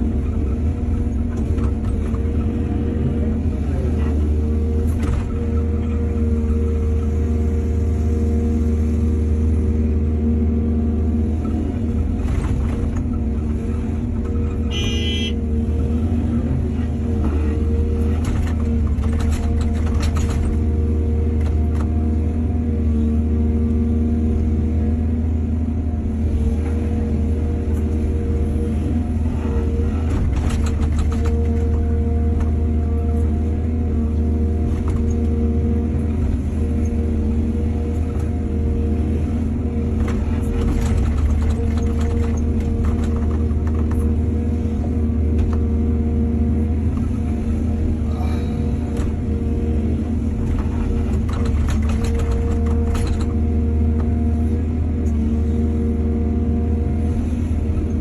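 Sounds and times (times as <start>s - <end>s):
excavator diesel engine drone: 0.0s - 58.0s
brief high-pitched tone: 14.7s - 15.4s.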